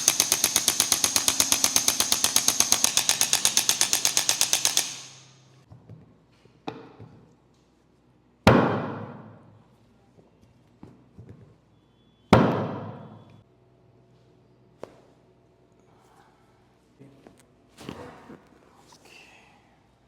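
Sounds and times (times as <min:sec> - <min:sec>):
electric percussion device hammering: 0:00.0 - 0:05.6.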